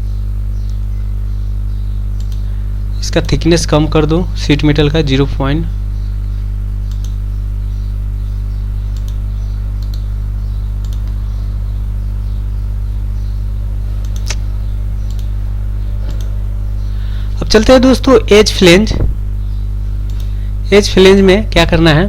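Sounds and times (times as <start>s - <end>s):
low electrical hum: 0.0s - 22.0s
computer keys and mouse clicking: 2.2s - 2.4s, 6.8s - 7.2s, 8.9s - 9.2s, 9.8s - 10.1s, 10.8s - 11.2s, 14.0s - 14.4s, 15.0s - 15.3s, 20.1s - 20.3s.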